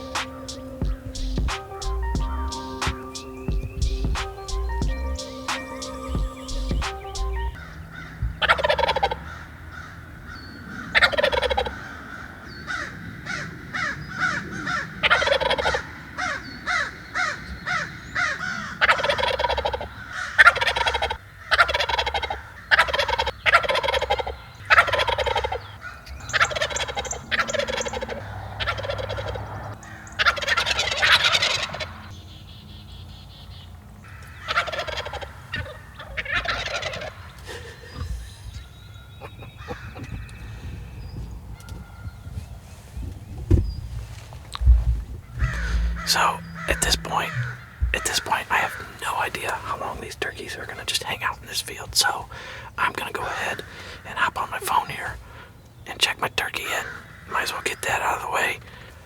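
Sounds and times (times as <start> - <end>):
turkeys gobbling: 4.9 - 9.5, 10.8 - 32.0, 34.2 - 38.6, 39.2 - 40.4, 44.7 - 50.0.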